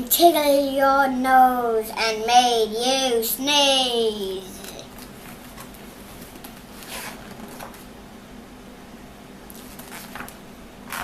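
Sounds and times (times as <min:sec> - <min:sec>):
low steady hum: 0:00.0 - 0:11.0
paper pages rustling: 0:09.5 - 0:11.0.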